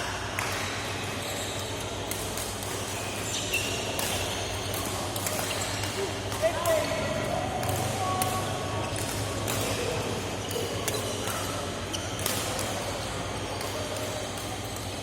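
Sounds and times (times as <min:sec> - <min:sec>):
low hall hum: 0:00.0 - 0:15.0
sneaker squeaks: 0:01.0 - 0:05.8, 0:08.0 - 0:13.1.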